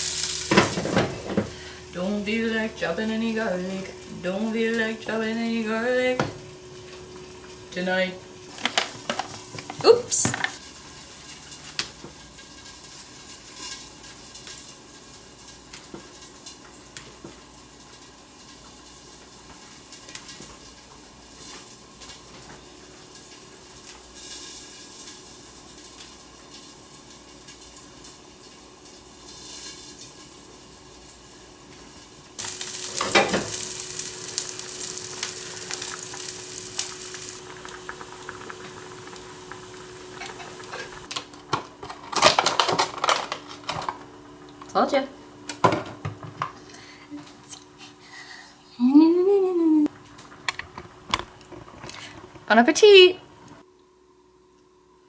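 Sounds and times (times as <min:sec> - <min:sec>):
food sizzling in pan: 0:00.0 - 0:41.1
food clattering into pan: 0:00.1 - 0:01.6, 0:32.4 - 0:38.5.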